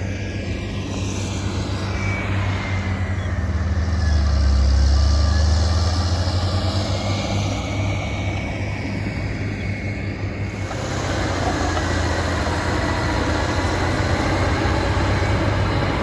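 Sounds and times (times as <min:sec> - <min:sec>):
heavy machinery diesel engine: 0:00.0 - 0:16.0.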